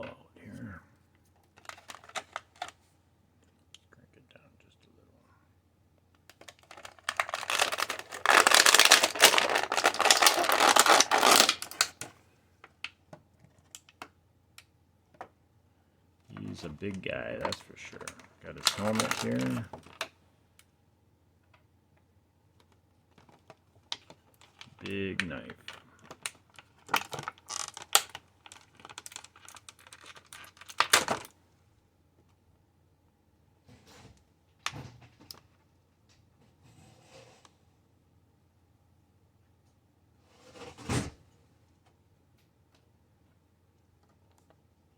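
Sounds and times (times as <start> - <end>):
plastic rustle: 1.5 - 2.8, 6.4 - 12.1, 17.4 - 20.1, 25.7 - 31.3
plastic packaging crinkling: 1.6 - 2.8, 6.3 - 12.1, 16.4 - 20.1, 25.7 - 31.3.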